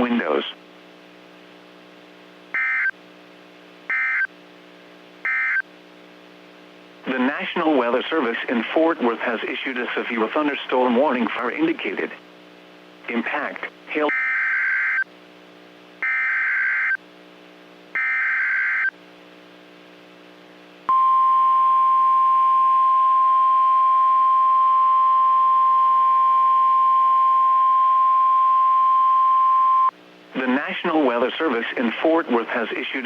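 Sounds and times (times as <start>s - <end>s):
steady warning alarm tone: 2.6s - 3.0s, 3.9s - 4.3s, 5.3s - 5.6s, 14.0s - 15.0s, 16.0s - 17.0s, 18.0s - 18.9s.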